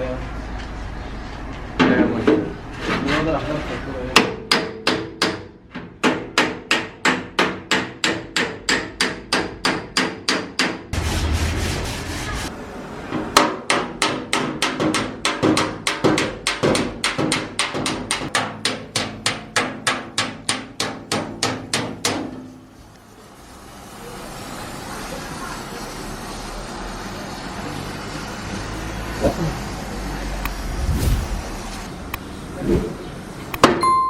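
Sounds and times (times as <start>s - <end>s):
hammer on sheet metal: 4.1s - 12.5s, 13.3s - 22.6s
rushing noise: 11.0s - 12.6s, 30.2s - 33.5s.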